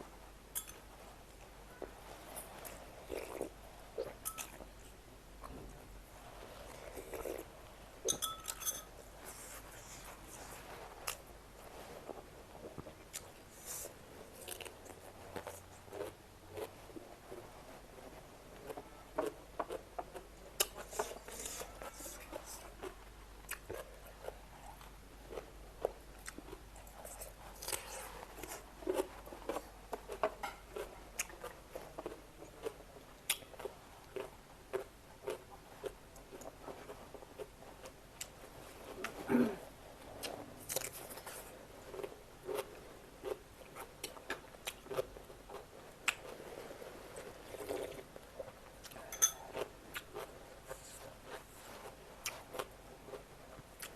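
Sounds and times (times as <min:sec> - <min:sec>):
person chewing food: 0:02.4 - 0:05.6, 0:06.6 - 0:39.3, 0:40.1 - 0:53.9.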